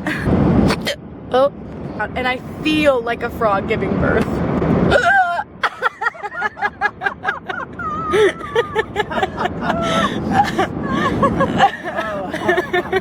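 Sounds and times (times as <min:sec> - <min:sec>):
car cabin road noise: 0:00.0 - 0:13.0
girl hiccuping: 0:04.9 - 0:05.5.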